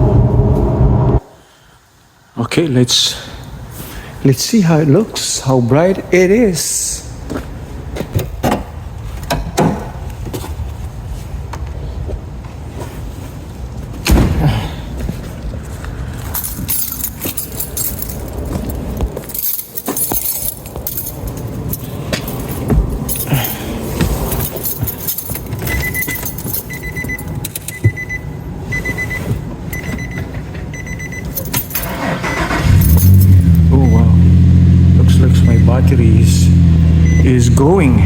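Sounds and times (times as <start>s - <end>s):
truck warning chime beeping: 25.6s - 38.0s.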